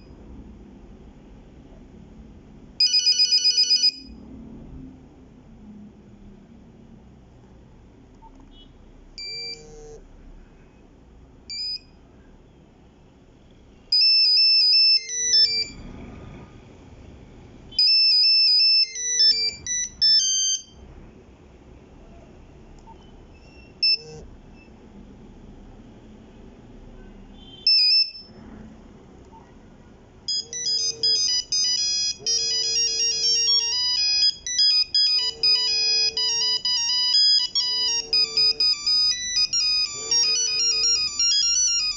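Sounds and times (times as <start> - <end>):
monophonic ringtone melody: 2.8 - 4.2, 13.9 - 15.8, 17.8 - 20.8, 27.7 - 28.3, 30.2 - 41.9.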